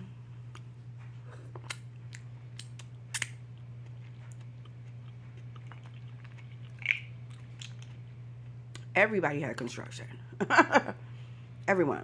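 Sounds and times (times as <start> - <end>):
steady low hum: 0.0 - 12.0
chewing with crunches: 0.5 - 8.9.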